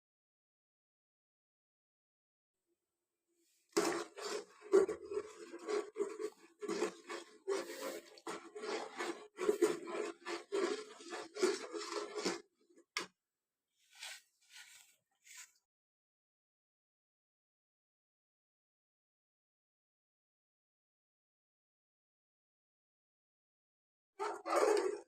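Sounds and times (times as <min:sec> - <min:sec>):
utensil scraping in cooking pan: 0:03.7 - 0:12.5, 0:13.9 - 0:15.5.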